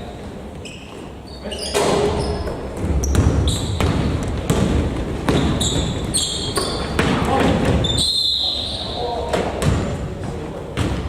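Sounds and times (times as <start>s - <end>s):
shoe squeaks: 0.0s - 3.8s, 5.3s - 7.0s, 7.8s - 9.3s
basketball bouncing indoors: 1.8s - 8.2s, 9.2s - 11.0s.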